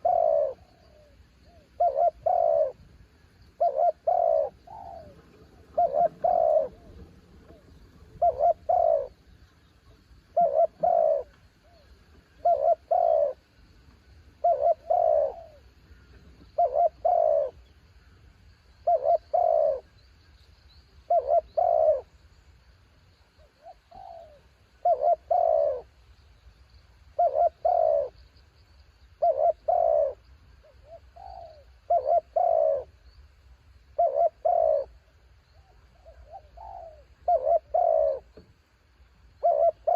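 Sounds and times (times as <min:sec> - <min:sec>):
dove cooing: 0:00.0 - 0:02.9, 0:03.5 - 0:13.6, 0:14.4 - 0:17.8, 0:18.8 - 0:20.0, 0:21.0 - 0:22.2, 0:23.4 - 0:26.0, 0:27.1 - 0:28.2, 0:29.1 - 0:33.1, 0:33.9 - 0:38.4, 0:39.3 - 0:39.9.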